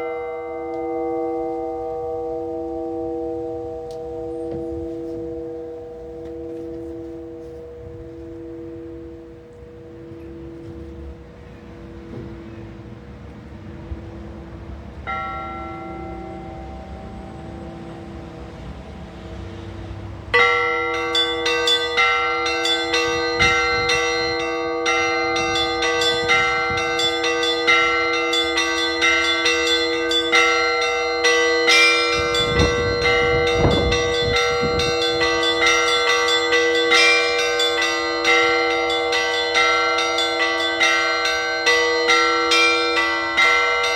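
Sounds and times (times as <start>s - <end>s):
church bells ringing: 0.0s - 43.9s
fast many-toned bell peal: 20.4s - 43.9s.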